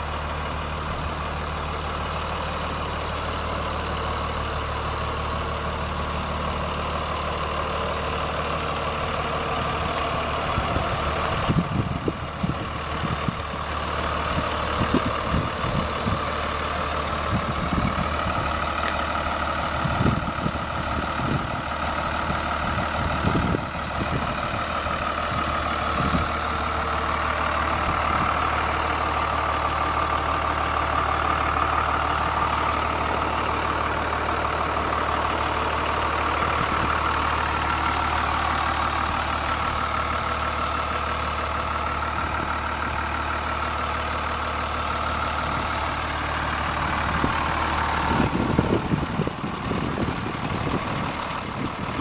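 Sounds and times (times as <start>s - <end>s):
bus engine idling: 0.0s - 52.0s.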